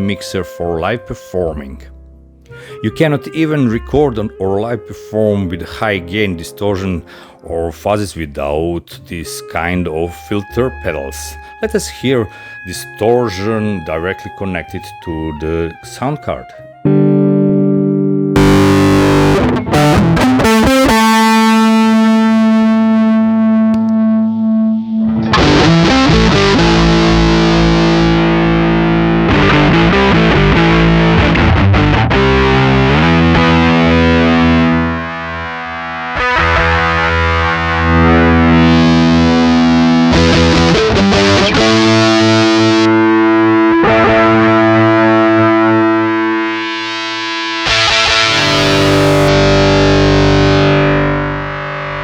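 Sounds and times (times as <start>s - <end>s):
distorted electric guitar: 16.9s - 52.0s.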